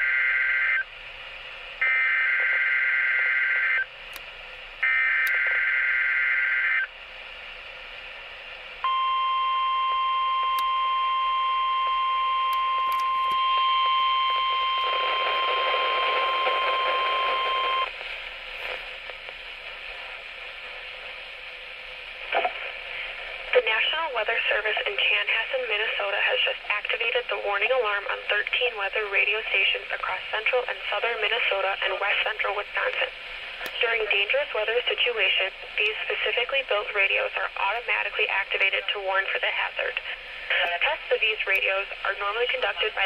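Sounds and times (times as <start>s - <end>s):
steady warning alarm tone: 8.8s - 17.9s
radio static: 12.5s - 21.4s, 22.2s - 43.0s.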